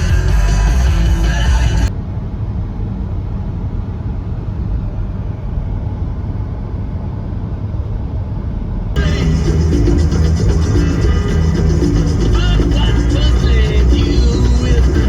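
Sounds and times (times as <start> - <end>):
music: 0.0 - 1.9, 9.0 - 15.0
vehicle rumble: 0.0 - 15.0.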